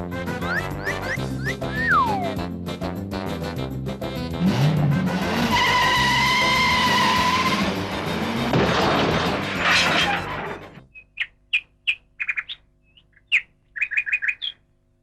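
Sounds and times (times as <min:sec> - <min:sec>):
bird chirping: 0:10.8 - 0:14.7.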